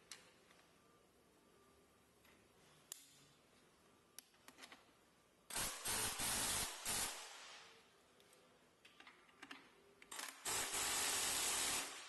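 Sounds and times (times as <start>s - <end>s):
compressed air hissing: 5.5s - 7.5s.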